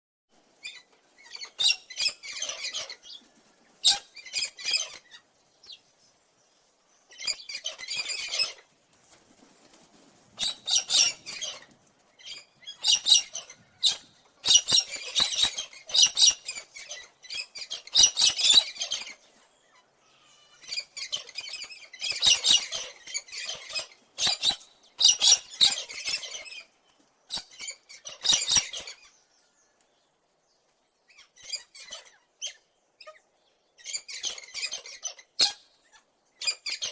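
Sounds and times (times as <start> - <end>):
cockatoo calling: 19.9 - 26.7.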